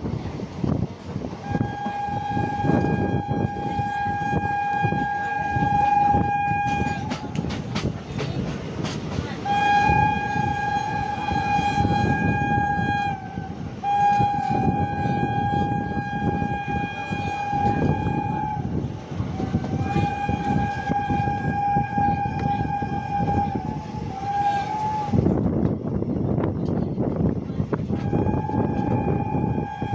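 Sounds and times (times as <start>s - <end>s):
train rumbling on track: 0.0s - 29.9s
train horn blasts: 1.4s - 7.4s, 9.4s - 25.4s, 27.9s - 29.9s.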